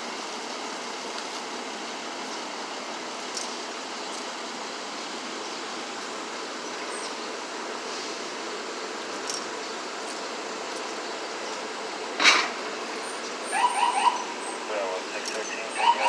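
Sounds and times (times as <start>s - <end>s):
city street traffic: 0.0s - 16.0s.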